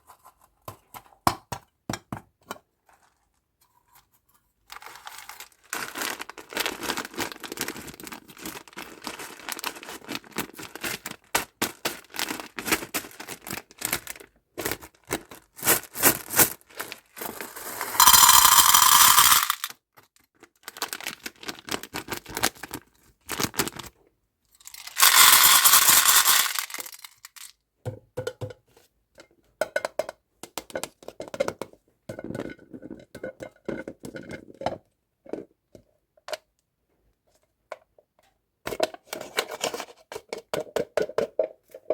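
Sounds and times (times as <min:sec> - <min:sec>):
plastic wrappers crinkling: 0:04.8 - 0:19.7, 0:20.6 - 0:24.0, 0:24.6 - 0:27.5.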